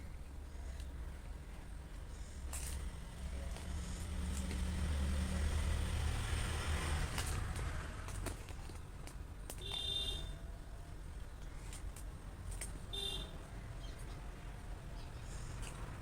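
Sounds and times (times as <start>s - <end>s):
vehicle passing rumble: 2.1s - 8.6s.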